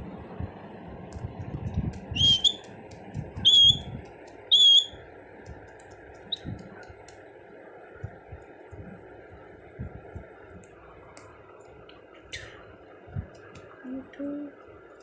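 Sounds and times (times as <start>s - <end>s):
parrot whistled calls: 2.2s - 2.7s, 3.4s - 3.9s, 4.5s - 5.0s.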